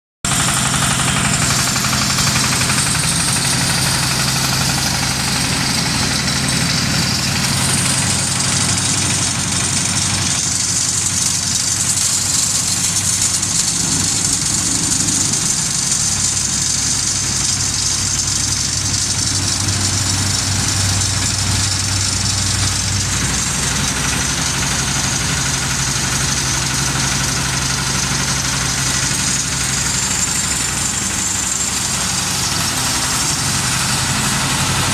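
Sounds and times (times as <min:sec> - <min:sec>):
baler machine hum: 0:00.3 - 0:34.9.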